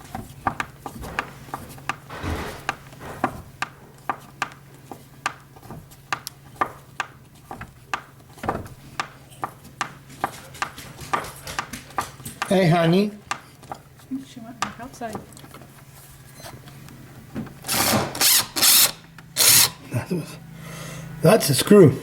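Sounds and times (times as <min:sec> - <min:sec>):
tool scraping metal: 0:00.9 - 0:04.0.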